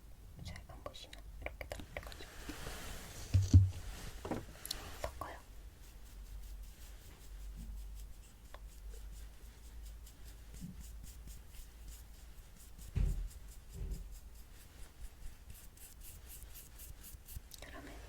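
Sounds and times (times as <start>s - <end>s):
soft low thumps: 3.3s - 4.4s
scratchy strokes of art tool: 4.8s - 18.0s.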